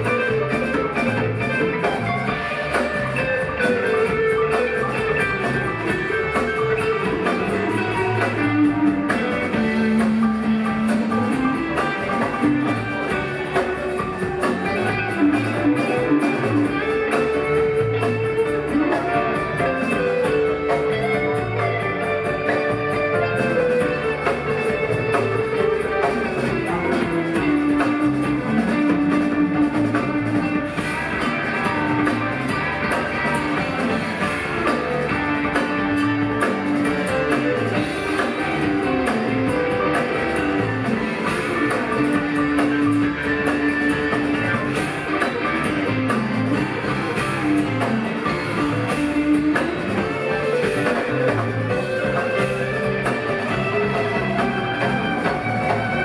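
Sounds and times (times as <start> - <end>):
electric guitar lead lines: 0.0 - 56.0
rock band playing: 0.0 - 56.0.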